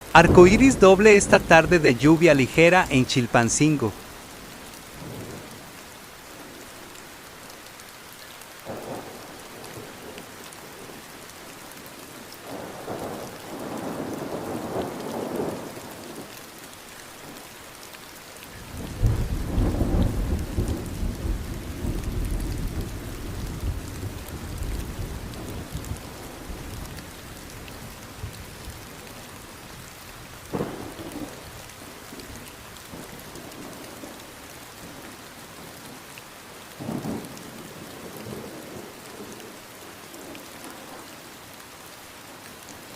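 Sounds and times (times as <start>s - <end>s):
thunder rumbling: 0.0s - 3.6s, 18.8s - 25.6s
light rain falling: 0.0s - 42.9s.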